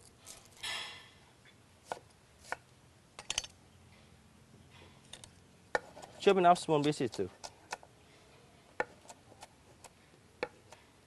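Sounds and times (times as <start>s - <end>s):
knife slicing onion: 5.7s - 6.3s.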